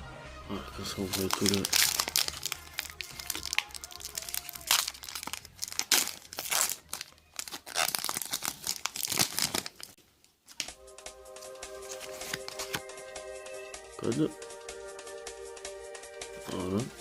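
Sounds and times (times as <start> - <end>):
music: 0.0 - 8.0, 10.6 - 17.0
foil wrapper crinkling and tearing: 0.8 - 10.0.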